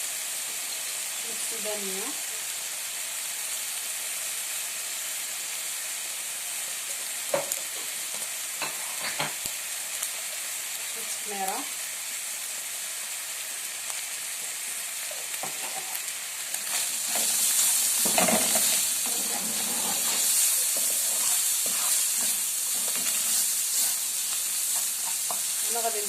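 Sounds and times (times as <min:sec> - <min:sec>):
food sizzling in oil: 0:00.0 - 0:26.0
utensil scraping a pan: 0:16.7 - 0:25.5.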